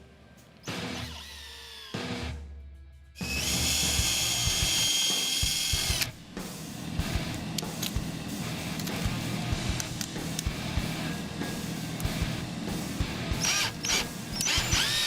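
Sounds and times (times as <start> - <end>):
power drill running: 0.8 - 2.0, 3.2 - 6.1, 13.4 - 15.0
guitar music: 7.0 - 13.8.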